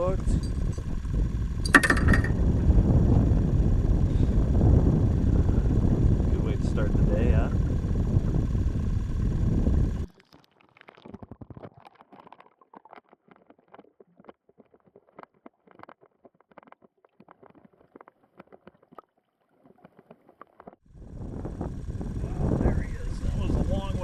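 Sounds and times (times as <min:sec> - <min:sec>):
water lapping against boat hull: 0:10.0 - 0:20.9.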